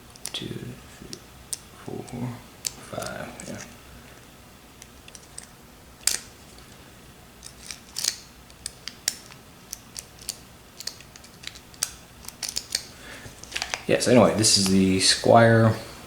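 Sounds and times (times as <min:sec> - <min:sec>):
lock pick clicking on pins: 0:04.8 - 0:06.3, 0:07.4 - 0:13.0.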